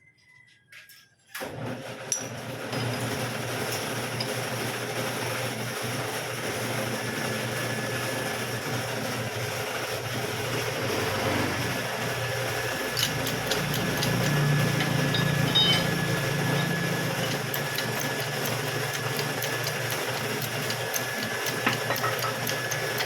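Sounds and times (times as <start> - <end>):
car engine starting and running: 10.0 - 17.7.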